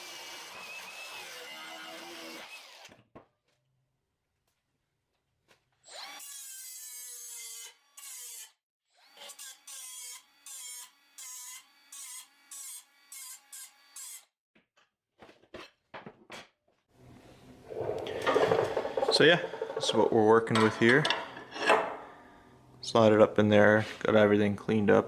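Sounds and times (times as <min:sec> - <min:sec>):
electric grinder on steel: 0:00.0 - 0:02.8, 0:17.0 - 0:22.8.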